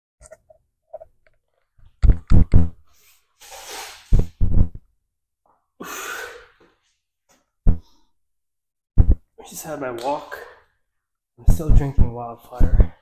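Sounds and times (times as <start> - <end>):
man breathing out: 5.8 - 6.6.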